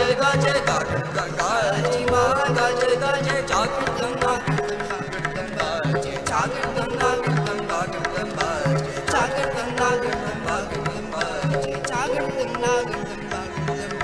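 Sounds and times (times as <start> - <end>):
bowed string melody: 0.0 - 14.0
harmonium drone: 0.0 - 14.0
tabla drumming: 0.0 - 14.0.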